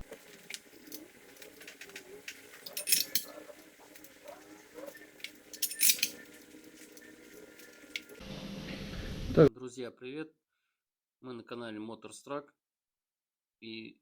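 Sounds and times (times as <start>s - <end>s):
metal pieces clinking: 0.2s - 8.2s.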